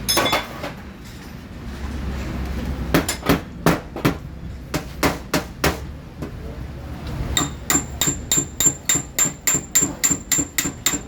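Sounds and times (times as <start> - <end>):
hammer tapping sheet metal: 7.4 - 11.0.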